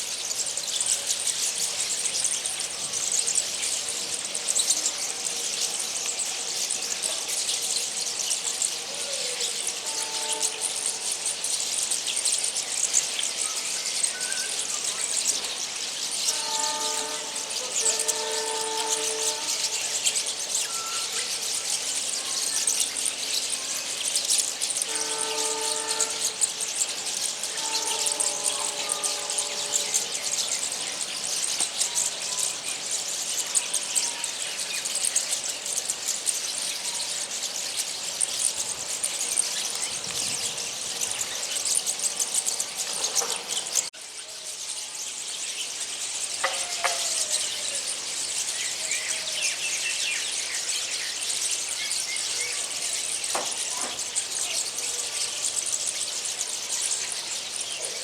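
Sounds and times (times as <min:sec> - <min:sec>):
small birds chattering: 0:00.0 - 0:58.0
distant horn blasts: 0:09.8 - 0:11.2, 0:16.2 - 0:21.5, 0:24.8 - 0:31.2.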